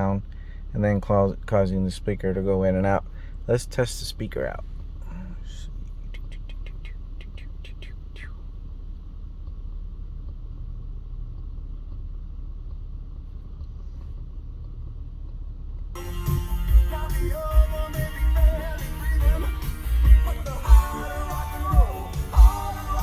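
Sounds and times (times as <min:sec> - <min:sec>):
car cabin low rumble: 0:00.0 - 0:23.0
music over car speakers: 0:04.6 - 0:15.1, 0:16.0 - 0:23.0.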